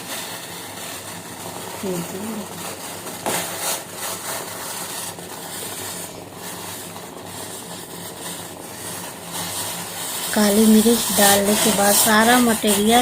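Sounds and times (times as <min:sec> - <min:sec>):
steady hiss: 0:00.0 - 0:13.0
metal spoon scraping a pot: 0:03.2 - 0:13.0.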